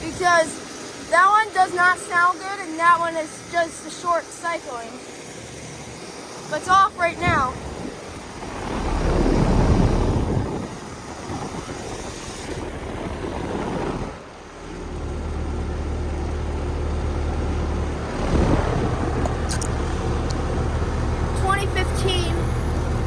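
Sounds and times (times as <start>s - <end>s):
air conditioner units running: 0.0s - 23.0s
low hum: 5.0s - 23.0s.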